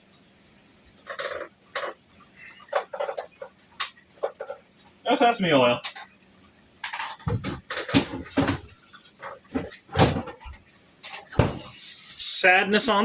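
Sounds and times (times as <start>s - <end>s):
cupboard doors and items knocking: 7.2s - 10.6s, 11.3s - 11.8s.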